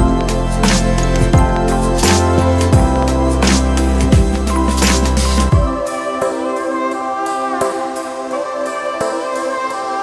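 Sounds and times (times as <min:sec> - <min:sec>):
instrumental music with bass and beat: 0:00.0 - 0:06.1.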